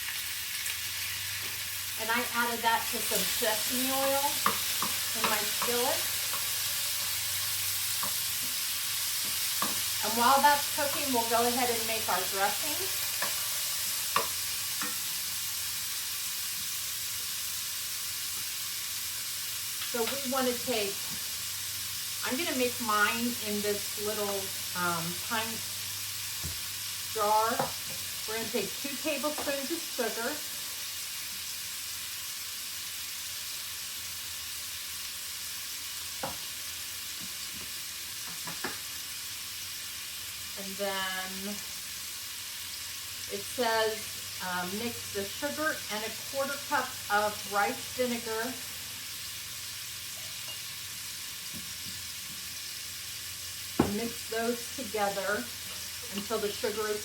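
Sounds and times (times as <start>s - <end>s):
chicken sizzling in a skillet: 0.0s - 57.0s.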